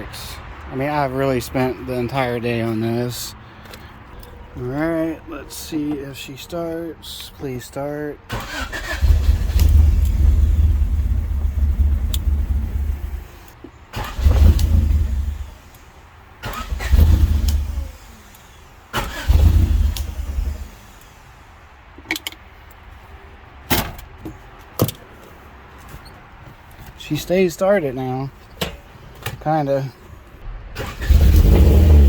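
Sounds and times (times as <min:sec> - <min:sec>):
car engine starter cranking: 0:08.3 - 0:21.2, 0:30.7 - 0:32.0.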